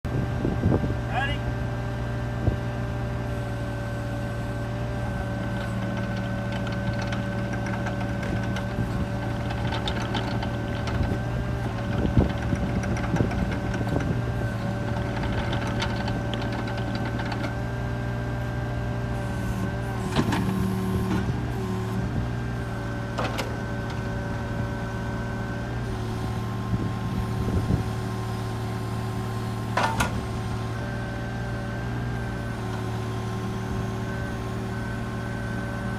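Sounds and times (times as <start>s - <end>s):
excavator diesel engine running: 0.2s - 35.9s
short knocks and clunks: 29.7s - 30.4s.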